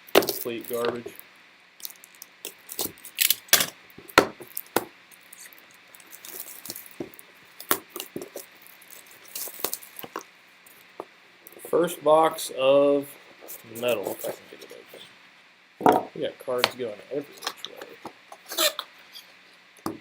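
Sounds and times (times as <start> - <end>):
plastic wrap crackling: 0.0 - 1.2, 1.8 - 11.0.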